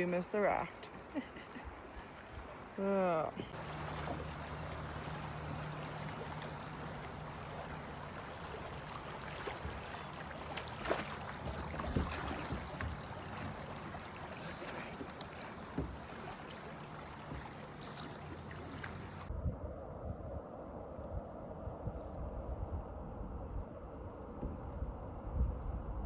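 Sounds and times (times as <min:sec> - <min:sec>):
rushing river water: 0:00.9 - 0:19.3
light knocks: 0:03.6 - 0:19.2.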